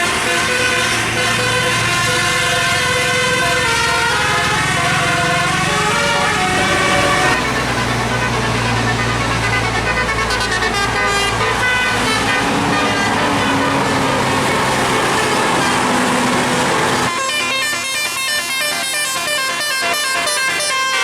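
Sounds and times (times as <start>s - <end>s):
bus horn playing a tune: 0.0s - 21.0s.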